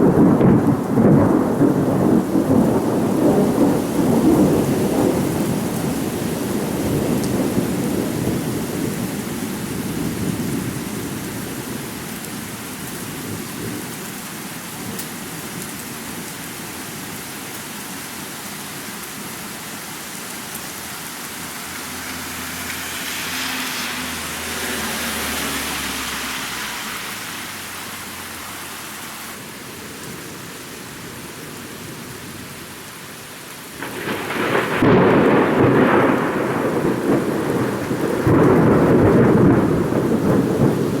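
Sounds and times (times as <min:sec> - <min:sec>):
loud thunderclap: 0:00.0 - 0:09.0, 0:33.8 - 0:41.0
thunder rumbling: 0:00.0 - 0:11.8, 0:21.6 - 0:27.2, 0:33.8 - 0:41.0
steady rain: 0:00.0 - 0:41.0.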